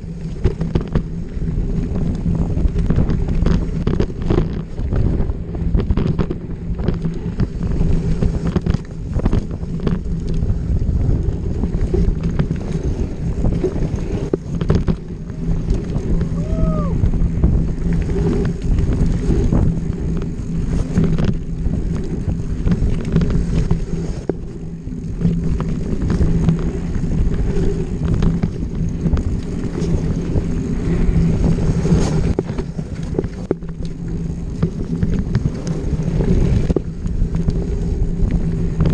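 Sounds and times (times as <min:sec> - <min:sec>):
wind buffeting microphone: 0:00.0 - 0:38.9.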